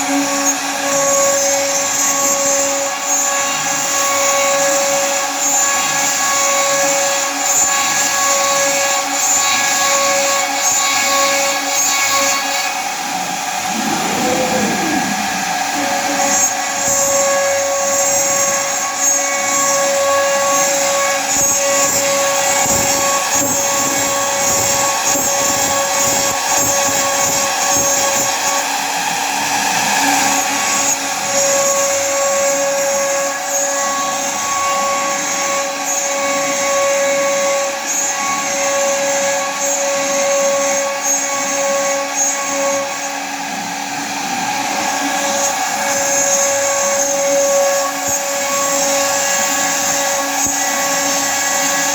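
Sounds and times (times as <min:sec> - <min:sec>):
machine whine: 0:05.5 - 0:27.4.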